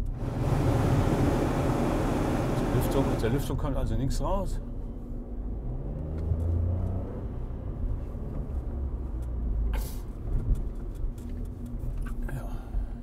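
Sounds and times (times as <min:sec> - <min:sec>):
car engine accelerating: 0:00.0 - 0:03.6, 0:05.2 - 0:11.9
road rumble: 0:00.0 - 0:13.0.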